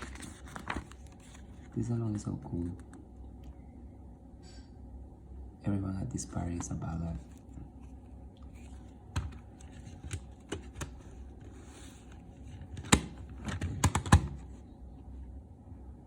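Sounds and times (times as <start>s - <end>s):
cd packaging clicks and taps: 9.1s - 11.0s, 12.7s - 14.4s.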